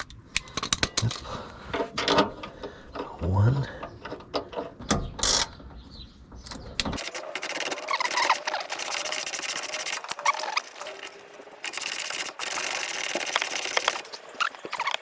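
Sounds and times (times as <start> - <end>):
ratchet wrench clicking: 7.0 - 10.7, 11.6 - 14.1.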